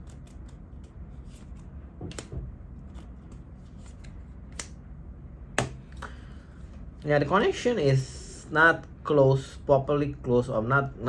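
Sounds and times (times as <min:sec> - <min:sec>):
low steady hum: 0:00.0 - 0:11.0
cards clicking and tapping on table: 0:02.0 - 0:04.8, 0:05.6 - 0:06.1.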